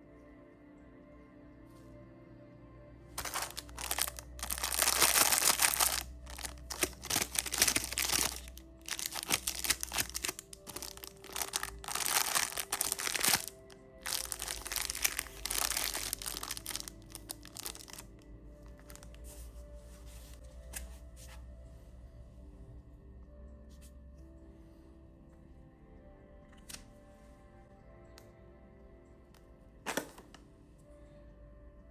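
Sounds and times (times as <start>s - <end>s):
soft background music: 0.0s - 31.9s
plastic wrappers crinkling: 3.2s - 19.2s.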